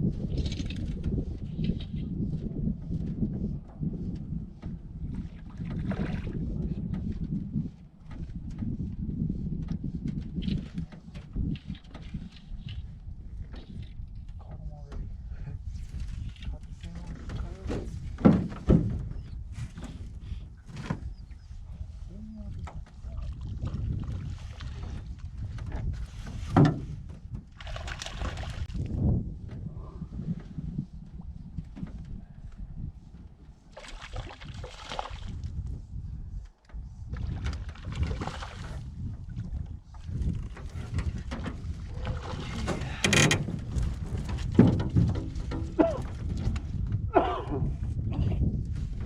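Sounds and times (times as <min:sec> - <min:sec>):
low wind: 0:00.0 - 0:49.0
water sloshing against boat hull: 0:02.8 - 0:15.2, 0:15.8 - 0:35.8, 0:36.4 - 0:47.4
knocks against boat: 0:17.3 - 0:19.1, 0:25.6 - 0:27.3, 0:40.8 - 0:47.0
water noise: 0:27.5 - 0:28.9, 0:33.6 - 0:35.5, 0:37.1 - 0:47.6.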